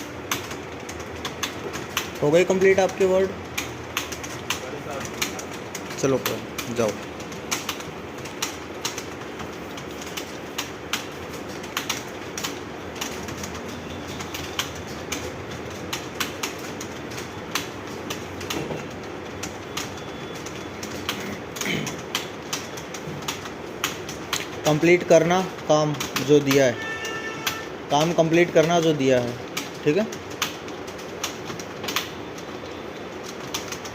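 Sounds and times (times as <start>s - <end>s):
keyboard typing clicks: 0.0s - 33.9s
steady background hiss: 0.0s - 33.9s.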